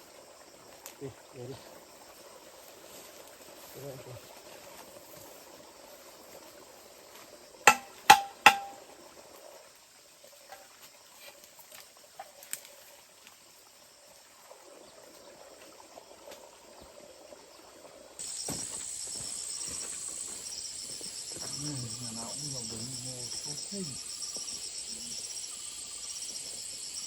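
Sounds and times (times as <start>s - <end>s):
sharp ringing knocks: 7.7s - 8.8s
high insect drone: 18.2s - 27.0s.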